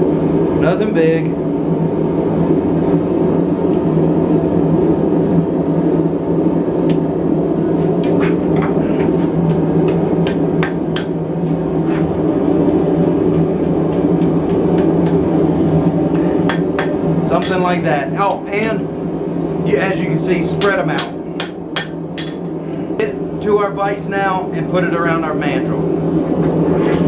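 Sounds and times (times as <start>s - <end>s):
hammer striking hot steel: 9.4s - 11.6s, 13.0s - 15.3s, 16.1s - 17.9s, 20.6s - 22.6s.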